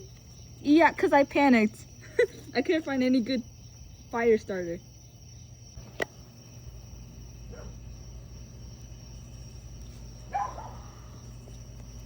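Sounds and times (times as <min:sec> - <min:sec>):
steady low hum: 0:00.0 - 0:12.0
dog barking: 0:07.5 - 0:07.8, 0:10.3 - 0:11.2.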